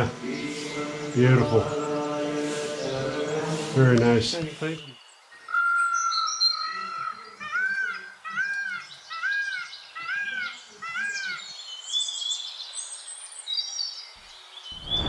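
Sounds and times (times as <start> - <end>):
bird whistling notes: 14.8 - 15.0.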